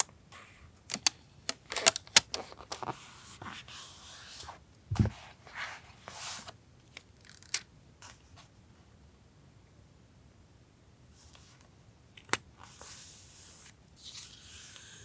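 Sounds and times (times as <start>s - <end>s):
soft thump on desk: 4.9s - 5.2s.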